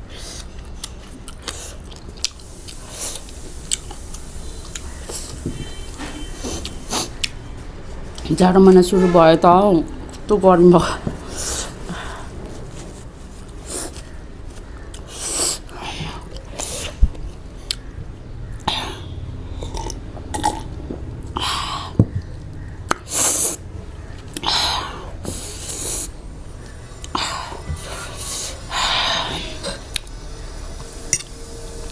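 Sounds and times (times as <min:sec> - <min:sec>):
chewing: 0:00.3 - 0:08.3, 0:19.6 - 0:20.8.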